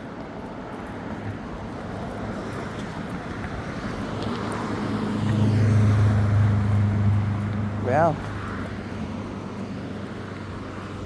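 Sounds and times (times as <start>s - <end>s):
road traffic noise: 0.0s - 11.0s
vehicle engine hum approaching: 0.0s - 11.0s.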